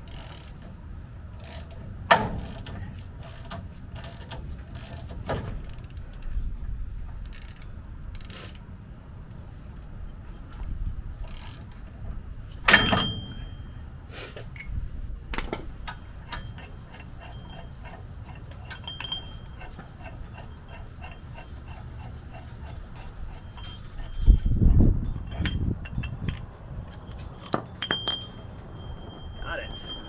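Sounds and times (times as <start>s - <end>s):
metal clinks of hand tools: 12.7s - 13.7s, 18.6s - 20.5s, 25.2s - 30.0s
sharp metallic clank: 12.7s - 13.8s.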